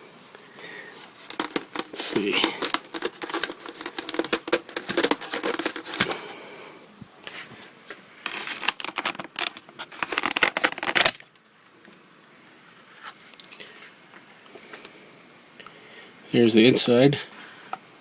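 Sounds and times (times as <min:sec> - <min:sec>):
packaging rustling and crinkling: 0:00.9 - 0:06.4, 0:07.2 - 0:11.3.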